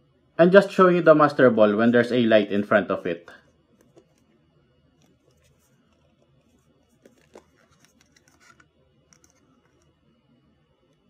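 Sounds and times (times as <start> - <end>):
hands handling plastic toy: 5.0 - 10.0.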